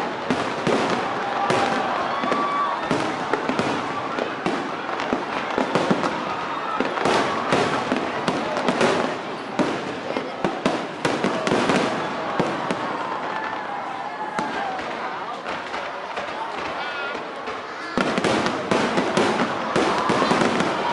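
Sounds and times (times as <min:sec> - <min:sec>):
faint crowd voices: 0:00.0 - 0:20.9
fireworks bangs: 0:00.0 - 0:20.9
fireworks crackle: 0:00.0 - 0:20.9.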